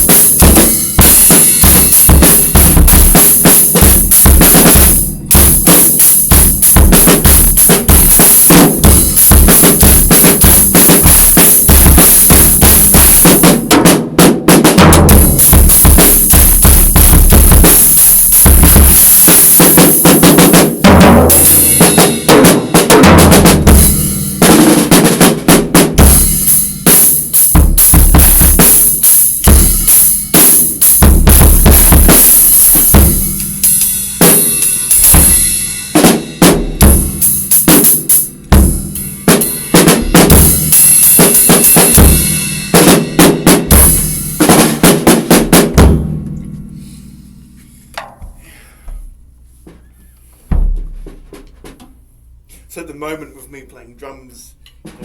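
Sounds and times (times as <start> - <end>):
bass drum kicks: 0.0 - 13.4, 14.8 - 24.2, 45.4 - 46.4, 48.0 - 49.9, 50.5 - 52.0
cymbals ringing: 0.0 - 13.7, 15.1 - 24.4, 26.0 - 44.8
snare and tom strokes: 0.0 - 35.3, 35.9 - 52.7, 54.7 - 55.0.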